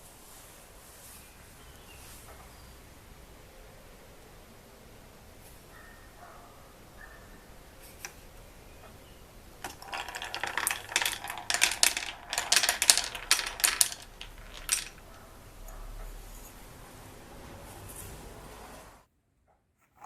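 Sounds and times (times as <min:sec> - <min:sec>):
marbles clicking and clattering: 0:09.6 - 0:15.2.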